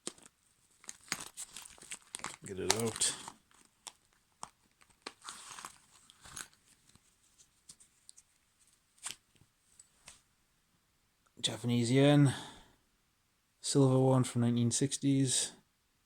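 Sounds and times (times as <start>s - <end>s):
items rustling and clicking: 0.0s - 10.2s.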